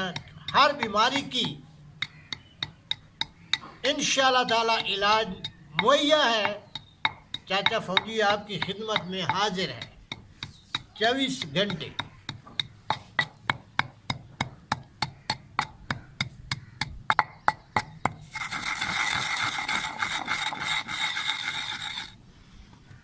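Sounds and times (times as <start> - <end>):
salt grinding: 4.8 - 22.2.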